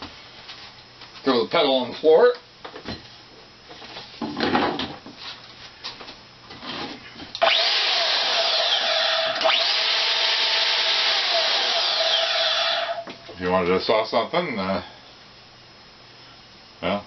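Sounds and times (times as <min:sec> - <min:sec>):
band saw running with whine: 0:07.4 - 0:13.1.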